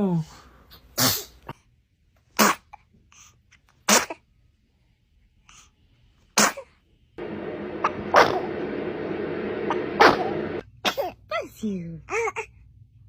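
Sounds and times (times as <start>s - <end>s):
baby sneezing: 0.7s - 1.6s, 2.3s - 2.8s, 3.8s - 4.3s, 6.3s - 6.7s, 10.8s - 11.2s.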